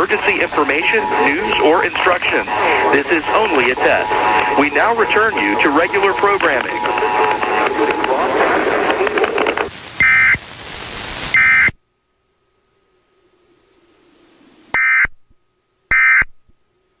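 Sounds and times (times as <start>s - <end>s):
loud hiss: 0.0s - 11.5s.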